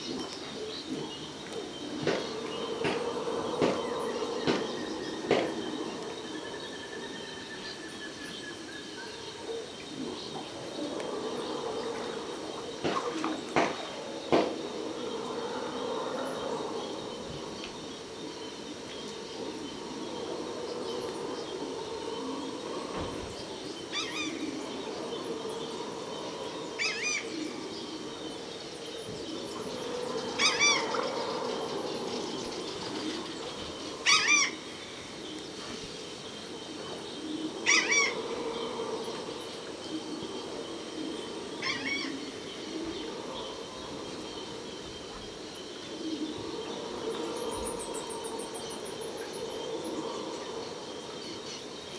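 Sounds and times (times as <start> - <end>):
insects chorus: 0.0 - 51.9.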